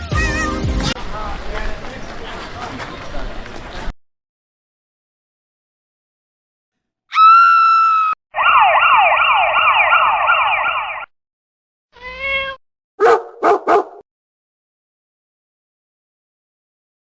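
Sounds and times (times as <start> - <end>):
yelp-like cries: 7.1 - 8.2
siren-like warble: 8.4 - 11.1.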